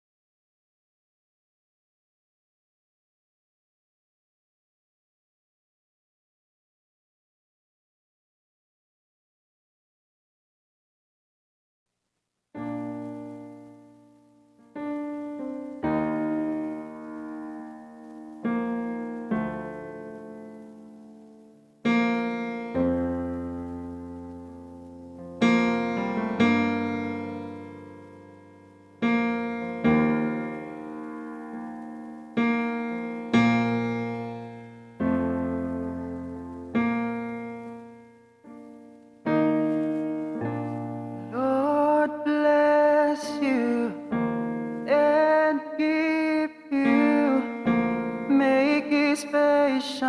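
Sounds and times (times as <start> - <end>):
slow piano chords: 12.6 - 50.0.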